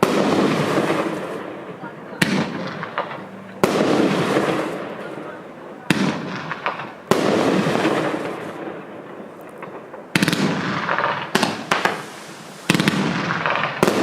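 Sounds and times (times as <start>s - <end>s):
fireworks bursts with echo: 0.0s - 14.0s
small firework pops: 5.9s - 14.0s.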